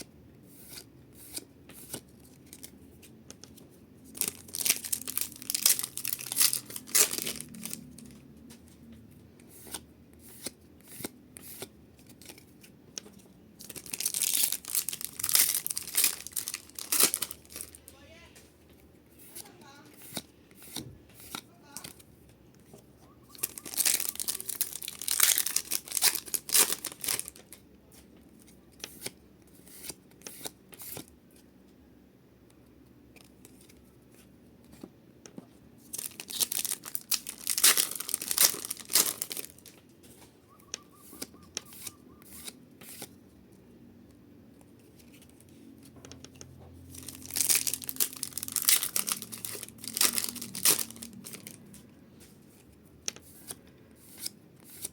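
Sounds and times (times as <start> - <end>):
foil wrappers crinkling: 4.1 - 8.1, 13.0 - 18.0, 23.3 - 27.6, 35.8 - 39.8, 46.9 - 51.8
foil packs tearing: 4.2 - 7.8, 13.6 - 17.8, 23.4 - 27.4, 36.0 - 39.7, 47.0 - 51.6.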